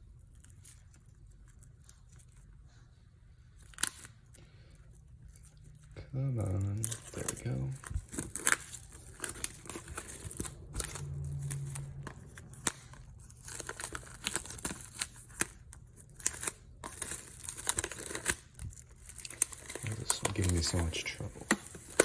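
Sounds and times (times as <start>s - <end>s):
small clicks and crackles: 0.0s - 22.0s
plastic and paper tearing: 5.6s - 22.0s.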